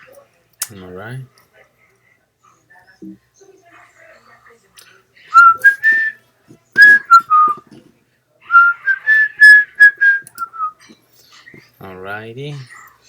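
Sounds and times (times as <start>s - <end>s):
person whistling a tune: 5.3s - 6.2s, 6.8s - 7.6s, 8.5s - 10.8s.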